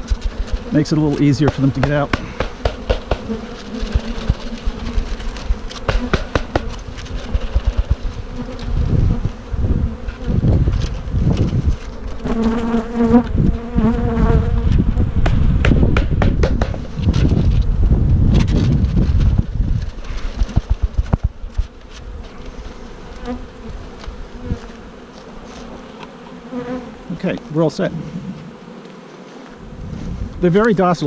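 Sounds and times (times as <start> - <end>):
honeybees buzzing: 0.0 - 31.0
knocking on wooden box: 1.4 - 4.5, 5.8 - 8.1, 15.2 - 17.0
low rumble on microphone: 6.8 - 11.9, 13.2 - 21.4.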